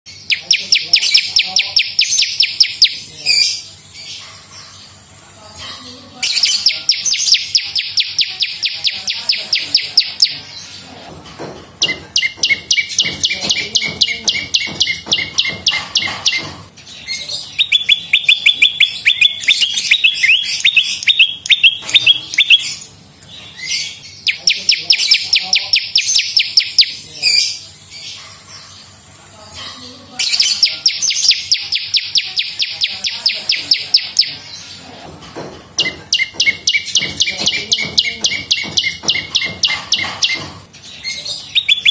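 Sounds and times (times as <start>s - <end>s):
bird trilling sharp chirps: 0.1s - 3.7s, 6.2s - 10.5s, 11.8s - 16.5s, 17.4s - 22.9s, 30.2s - 34.5s, 35.8s - 40.5s, 41.3s - 41.9s.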